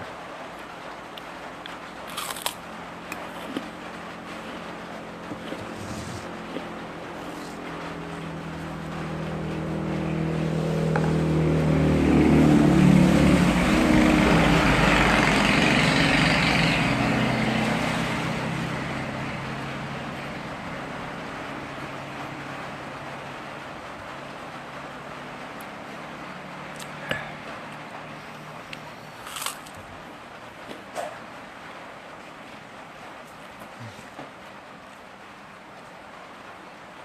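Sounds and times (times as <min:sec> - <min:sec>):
vehicle driving past: 0:03.3 - 0:29.3.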